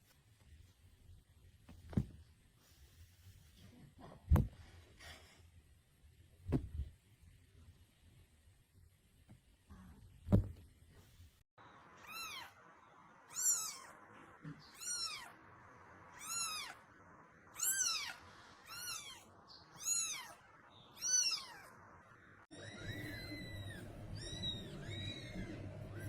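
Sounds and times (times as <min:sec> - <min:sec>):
cat meowing: 0:12.0 - 0:12.6, 0:13.3 - 0:14.0, 0:14.6 - 0:15.4, 0:16.1 - 0:16.8, 0:17.5 - 0:21.8.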